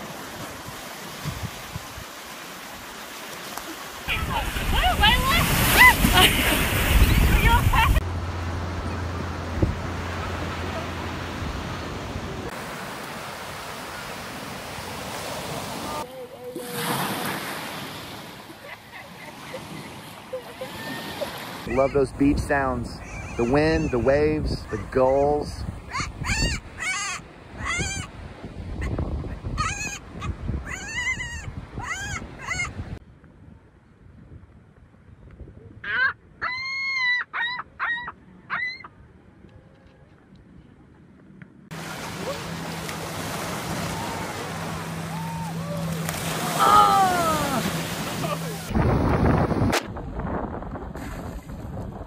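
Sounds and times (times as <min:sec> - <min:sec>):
surf: 0:00.0 - 0:27.0, 0:41.7 - 0:52.0
wind: 0:00.0 - 0:52.0
gulls squawking: 0:04.1 - 0:08.0, 0:18.6 - 0:28.2
wind rumble on microphone: 0:04.1 - 0:10.4, 0:27.4 - 0:36.5, 0:48.6 - 0:52.0.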